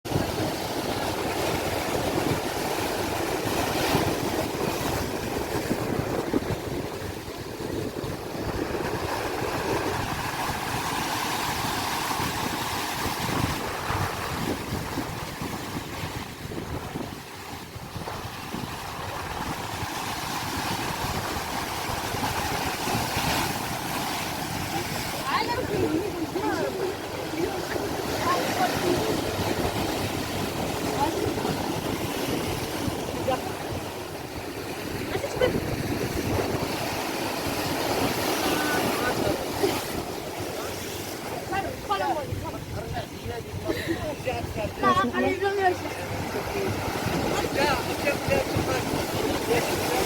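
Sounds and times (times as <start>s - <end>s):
sea waves washing ashore: 0.0s - 50.0s.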